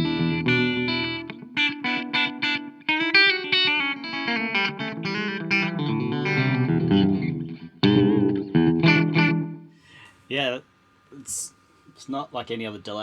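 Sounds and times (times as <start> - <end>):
electric guitar with slapback echo: 0.0 - 9.8.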